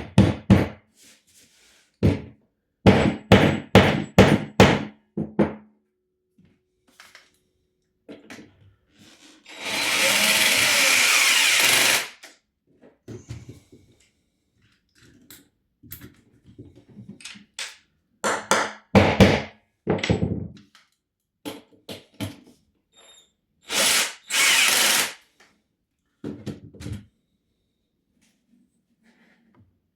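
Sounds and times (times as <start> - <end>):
power drill running: 9.4 - 12.2, 23.7 - 25.2.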